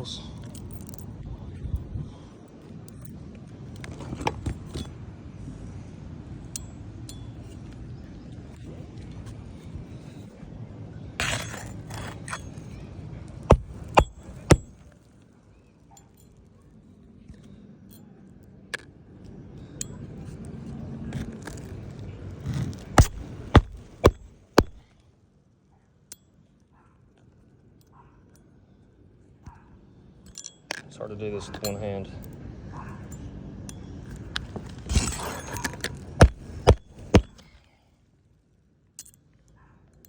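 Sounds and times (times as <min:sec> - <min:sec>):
wind noise: 0:01.2 - 0:02.3
scraping: 0:11.2 - 0:12.8, 0:13.4 - 0:14.9, 0:21.1 - 0:24.9, 0:34.7 - 0:37.6
hammer striking nails: 0:13.5 - 0:14.8, 0:23.0 - 0:24.8, 0:36.2 - 0:37.5.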